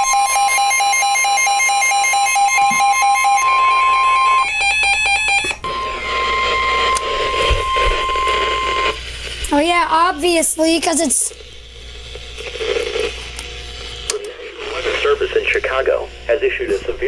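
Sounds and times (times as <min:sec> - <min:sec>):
rapidly pulsing beep: 0:00.0 - 0:09.0
weather radio alarm tone: 0:00.0 - 0:09.0.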